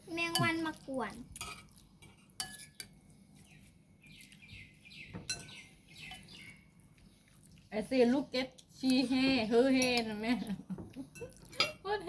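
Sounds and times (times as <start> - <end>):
spoons and plates clinking: 1.4 - 3.0, 5.3 - 6.6, 11.1 - 11.9
birds chirping: 2.8 - 7.3.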